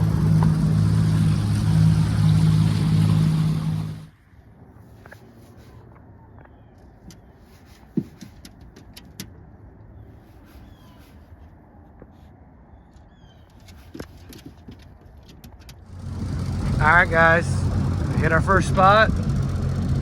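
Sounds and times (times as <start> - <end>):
low steady rumble: 0.0 - 4.8, 15.9 - 20.0.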